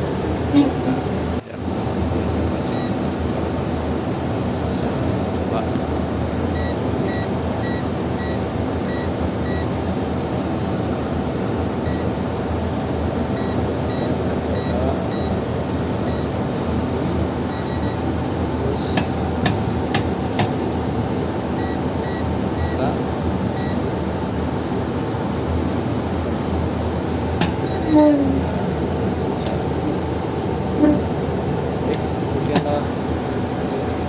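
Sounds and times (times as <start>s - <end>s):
steady background hum: 0.0s - 34.0s
keypad beeping: 2.7s - 3.0s, 6.5s - 9.8s, 11.8s - 12.2s, 13.3s - 16.4s, 17.5s - 18.1s, 21.6s - 22.9s, 23.5s - 23.8s, 27.4s - 28.2s.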